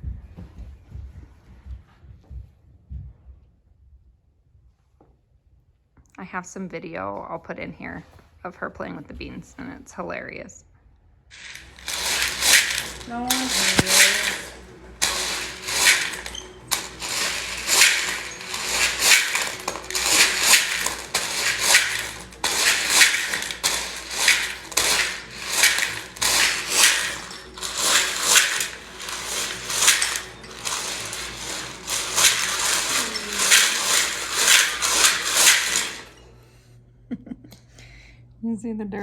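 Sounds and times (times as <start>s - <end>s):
dried beans rattling and pouring: 11.3s - 36.2s.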